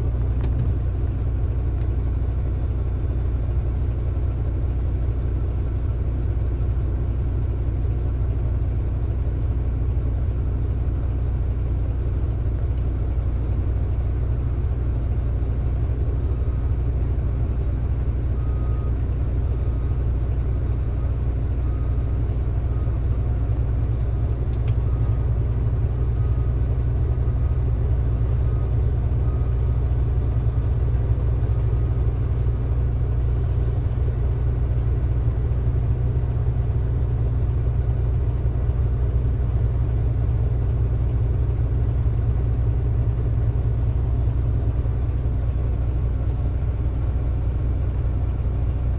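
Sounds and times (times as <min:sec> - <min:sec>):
heavy diesel machinery rumbling: 0:00.0 - 0:48.9.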